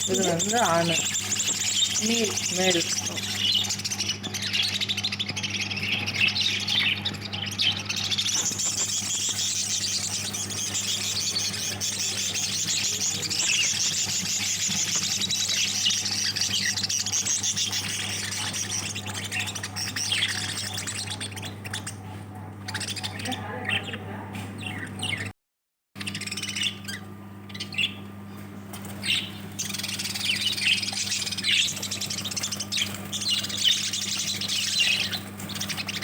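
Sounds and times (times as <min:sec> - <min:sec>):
birds chirping and squawking: 0:00.0 - 0:25.3, 0:26.0 - 0:36.0
steady low hum: 0:00.0 - 0:25.3.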